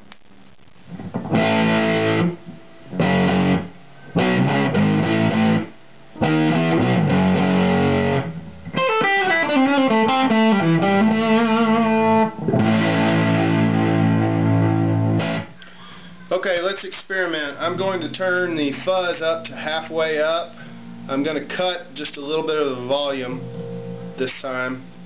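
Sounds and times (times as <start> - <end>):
fuzz electric guitar: 0.9 - 16.2.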